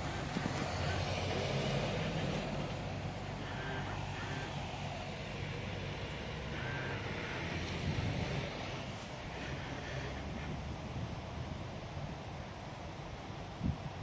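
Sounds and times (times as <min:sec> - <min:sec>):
car engine running: 0:00.0 - 0:10.5.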